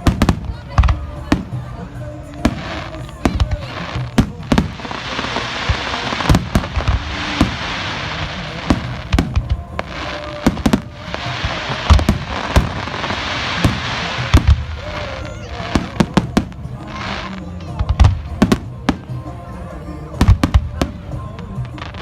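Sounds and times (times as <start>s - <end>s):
fireworks crackling hiss: 0.0s - 22.0s.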